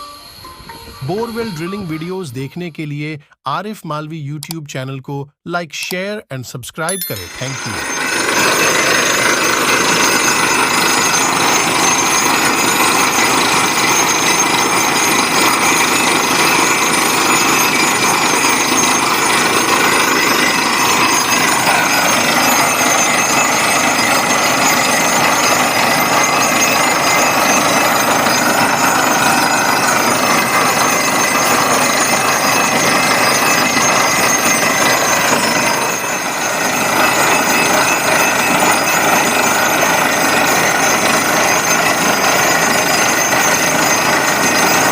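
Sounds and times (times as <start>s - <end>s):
air drill hammering: 7.0s - 44.9s
rig engine and compressor running: 7.0s - 44.9s.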